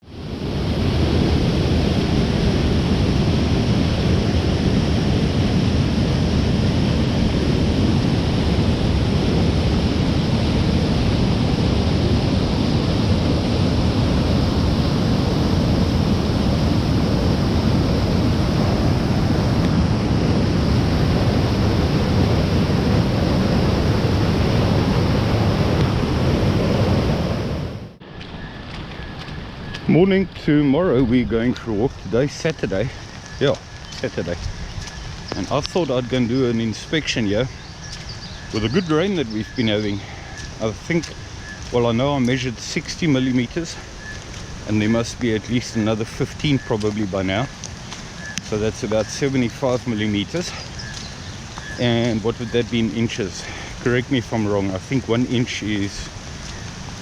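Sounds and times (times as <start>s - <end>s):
stream water rushing: 32.5s - 57.0s.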